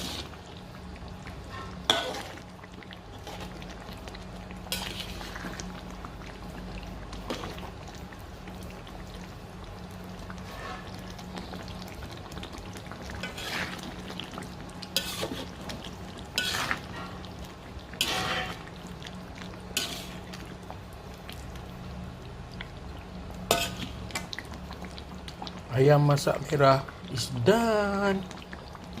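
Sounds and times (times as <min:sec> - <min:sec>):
utensil scraping against pot: 0:00.0 - 0:00.4, 0:01.5 - 0:02.4, 0:10.4 - 0:11.0, 0:13.2 - 0:13.8, 0:15.0 - 0:15.6, 0:16.3 - 0:17.2, 0:18.0 - 0:18.7
food stirred in a pot: 0:00.0 - 0:29.0
low steady hum: 0:00.0 - 0:29.0.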